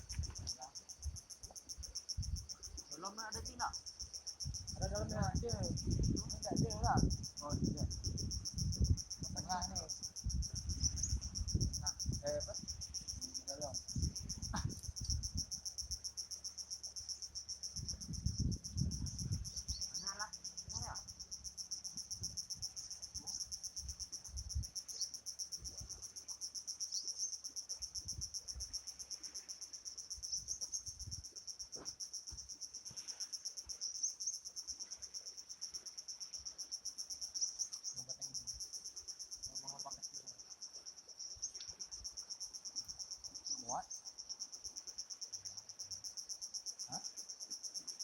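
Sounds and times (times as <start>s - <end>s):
crickets chirring: 0.0s - 48.0s.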